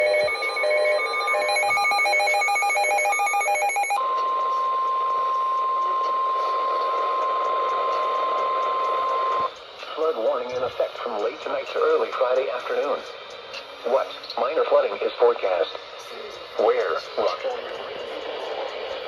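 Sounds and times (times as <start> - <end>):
alternating high and low beeps: 0.0 - 9.6
steady warning alarm tone: 0.0 - 11.0.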